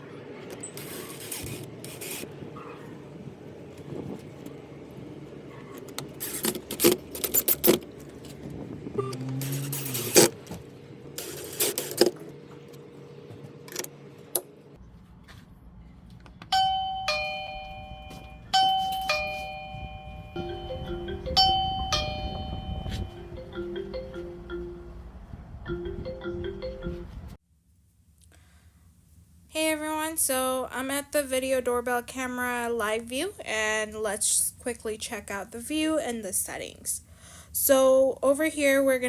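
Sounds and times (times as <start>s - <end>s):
electronic bell-like chime: 16.6s - 23.4s.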